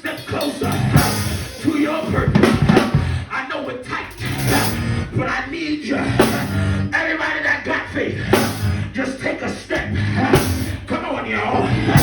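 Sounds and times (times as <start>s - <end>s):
cymbal crashes: 0.0s - 3.1s, 4.1s - 4.9s, 10.4s - 10.9s
band instruments: 0.0s - 3.3s, 4.1s - 5.3s, 6.2s - 6.9s, 8.2s - 9.0s, 9.8s - 11.0s, 11.7s - 12.0s
drum kit fast beat: 0.0s - 3.3s, 4.1s - 4.9s, 6.2s - 6.7s, 8.3s - 8.9s, 9.8s - 11.0s.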